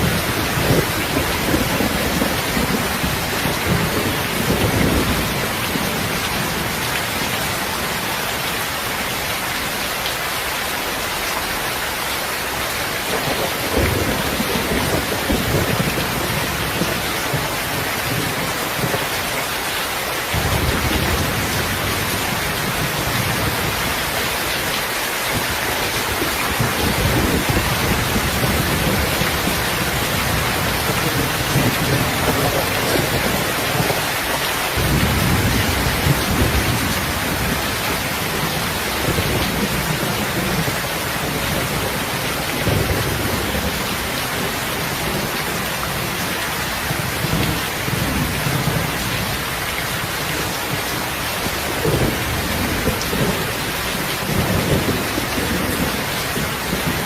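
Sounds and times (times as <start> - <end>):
low rumbles of thunder: 0.0 - 7.2, 13.1 - 19.2, 25.3 - 34.1, 34.8 - 49.4, 50.4 - 57.0
steady rain: 0.0 - 57.0.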